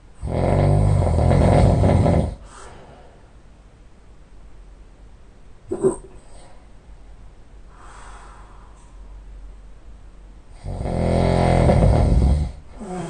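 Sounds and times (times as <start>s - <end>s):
person snoring: 0.2s - 2.7s, 10.6s - 13.0s
faint breath: 2.4s - 3.4s, 7.7s - 9.3s.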